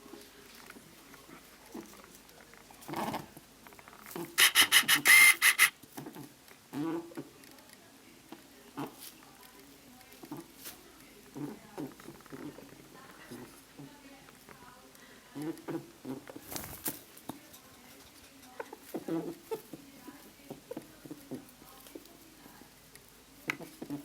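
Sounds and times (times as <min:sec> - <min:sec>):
rabbit snuffling: 0:00.0 - 0:07.4, 0:08.2 - 0:24.0
rabbit grunting: 0:02.7 - 0:03.4, 0:04.0 - 0:07.3, 0:10.1 - 0:14.0, 0:17.4 - 0:19.8.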